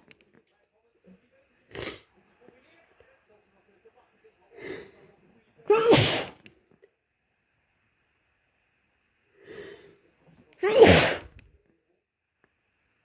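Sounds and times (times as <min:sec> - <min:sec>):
person sneezing: 0:01.7 - 0:02.0, 0:04.6 - 0:05.0, 0:05.7 - 0:06.4, 0:10.6 - 0:11.4
gasping intake of breath: 0:04.6 - 0:05.0, 0:09.4 - 0:09.9, 0:10.6 - 0:11.3.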